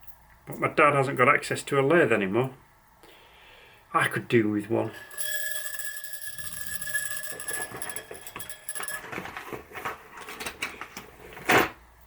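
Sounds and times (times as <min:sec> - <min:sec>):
steel washers clicking and rattling: 0:05.0 - 0:10.8.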